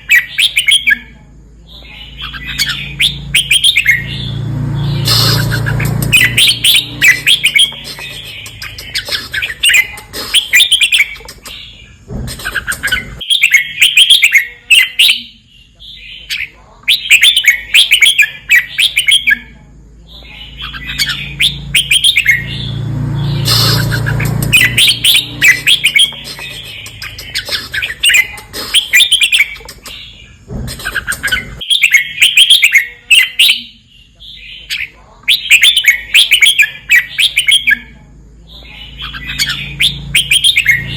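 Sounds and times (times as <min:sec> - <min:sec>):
bird singing rapid chirps: 0:00.0 - 0:40.9.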